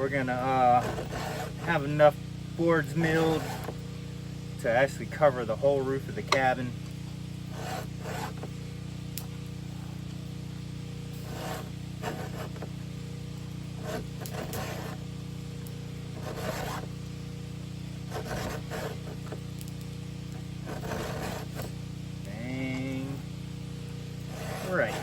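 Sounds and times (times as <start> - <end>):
low hum: 0.0 - 25.0
file scraping chainsaw chain: 0.3 - 2.0, 2.9 - 3.8, 7.5 - 8.5, 11.1 - 12.8, 13.8 - 15.1, 16.2 - 16.9, 18.1 - 19.4, 20.6 - 21.8, 24.2 - 25.0.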